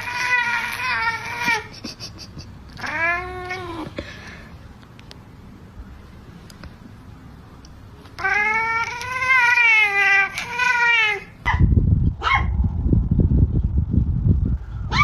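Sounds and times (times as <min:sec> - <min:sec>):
cat yowling: 0:00.0 - 0:01.7, 0:02.8 - 0:03.9, 0:08.2 - 0:11.6
loud low rumbling: 0:11.4 - 0:15.0.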